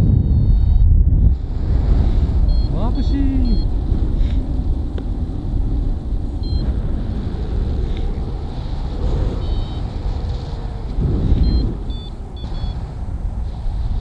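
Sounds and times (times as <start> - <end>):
wind buffeting microphone: 0.0 - 14.0
short high electronic beeps: 3.4 - 3.7, 6.4 - 6.6.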